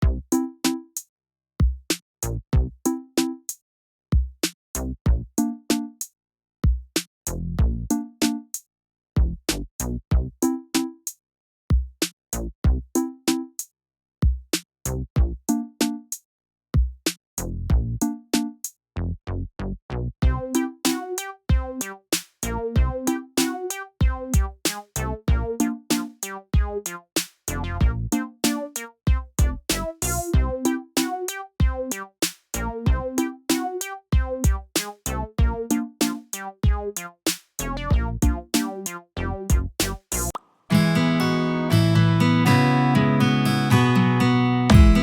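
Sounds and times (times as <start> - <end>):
drum-machine kicks: 0.0 - 0.3, 5.1 - 5.8, 7.6 - 7.8, 15.2 - 15.4, 16.8 - 17.0, 20.2 - 21.8, 22.8 - 31.8, 32.9 - 37.3, 37.9 - 38.9, 39.5 - 40.1, 44.7 - 45.0.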